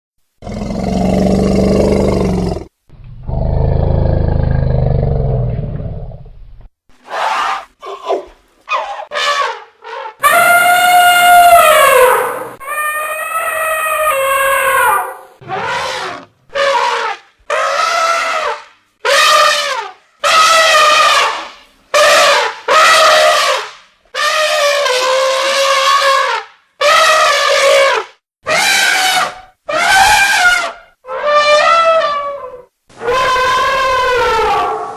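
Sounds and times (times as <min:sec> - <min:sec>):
elephant trumpeting: 0:07.0 - 0:34.9.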